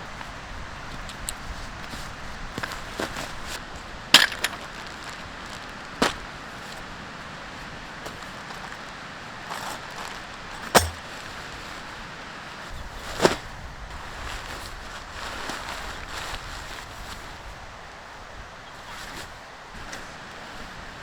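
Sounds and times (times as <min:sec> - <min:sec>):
wind: 0:00.0 - 0:21.0
sharp knocks of tent gear: 0:04.2 - 0:06.3, 0:09.5 - 0:11.5.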